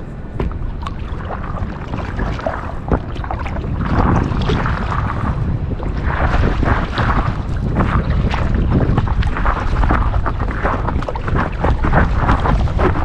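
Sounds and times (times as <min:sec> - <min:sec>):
wind buffeting the microphone: 0:00.0 - 0:13.0
sharp knocks: 0:00.4 - 0:01.0
paddle strokes splashing water: 0:00.4 - 0:13.0.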